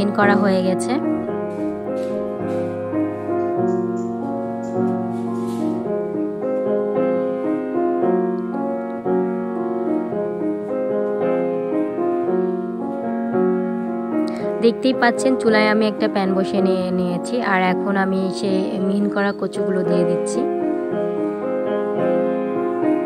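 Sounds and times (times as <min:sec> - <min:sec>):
gentle piano tune: 0:00.0 - 0:23.0.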